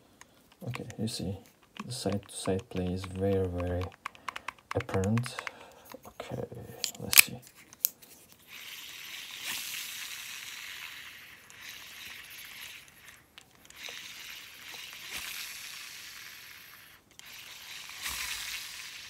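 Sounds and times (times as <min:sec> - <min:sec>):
fishing reel spool whirring: 0:08.5 - 0:19.0.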